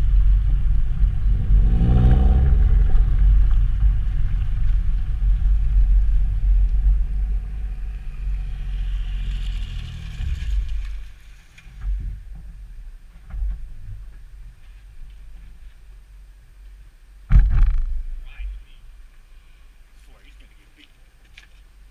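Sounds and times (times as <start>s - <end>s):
deep car exhaust note: 0.0s - 10.7s.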